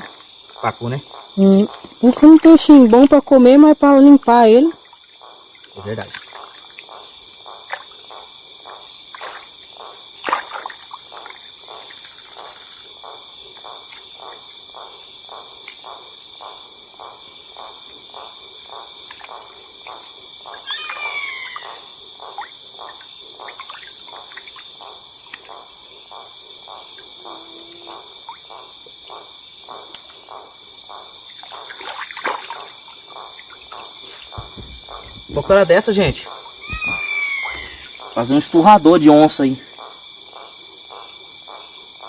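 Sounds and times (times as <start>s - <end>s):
crickets chirping: 0.0s - 42.0s
brief falling call: 20.7s - 21.8s, 36.6s - 37.9s.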